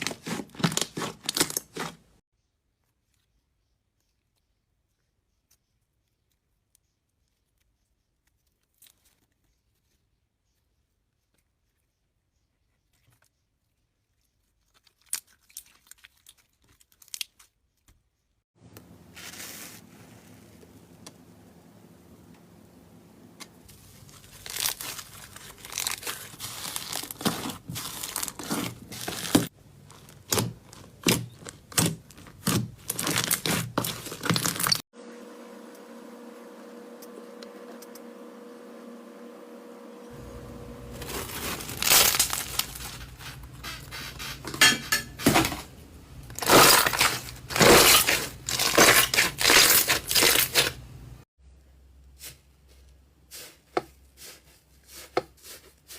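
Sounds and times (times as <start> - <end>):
slime crinkling and popping: 23.9 - 34.8, 41.0 - 43.1.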